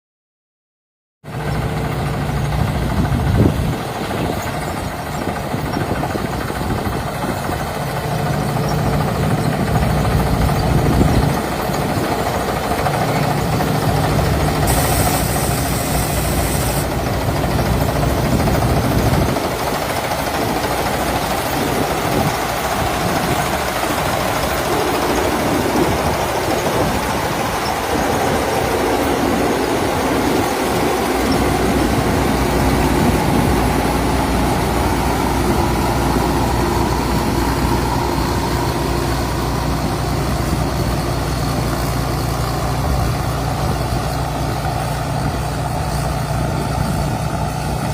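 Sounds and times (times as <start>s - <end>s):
combine harvester engine running: 1.2s - 47.9s
brief high hiss: 14.6s - 17.0s.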